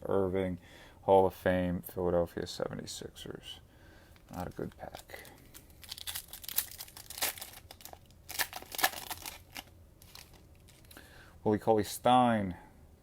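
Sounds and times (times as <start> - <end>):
cellophane wrapper tearing and crinkling: 4.3 - 11.0.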